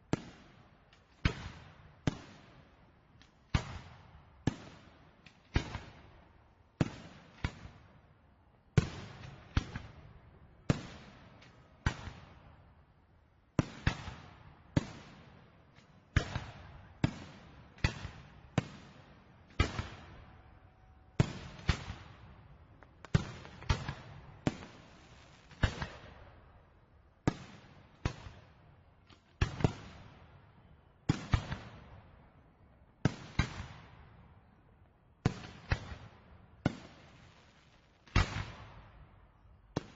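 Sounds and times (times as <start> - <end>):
fireworks bursting with echo: 13.6 - 20.5, 21.2 - 28.6, 35.3 - 39.9.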